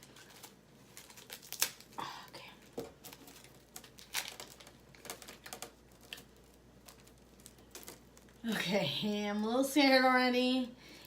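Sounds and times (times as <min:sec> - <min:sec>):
wafer packet crinkling: 0:00.0 - 0:02.0, 0:02.6 - 0:08.8.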